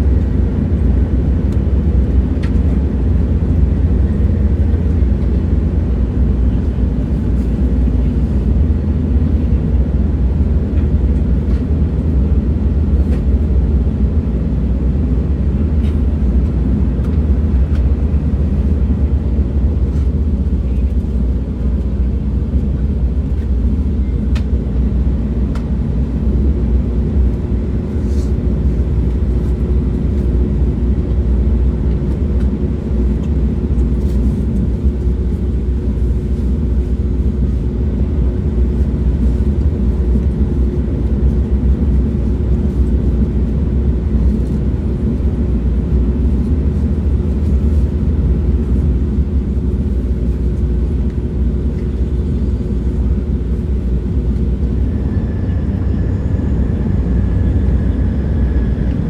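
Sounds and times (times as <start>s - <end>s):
moving train rumble: 0.0s - 59.0s
steady hum: 0.0s - 59.0s
faint higher whine: 52.4s - 59.0s.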